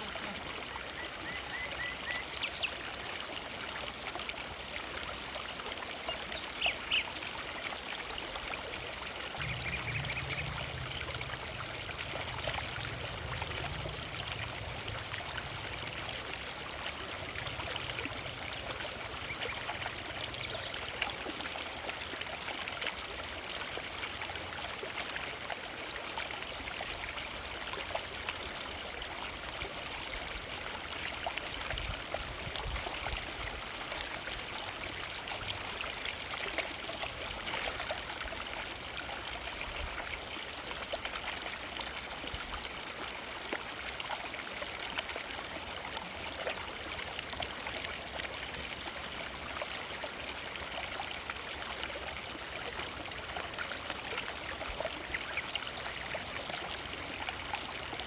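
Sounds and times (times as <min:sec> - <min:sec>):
river flowing over rocks: 0:40.6 - 0:58.0.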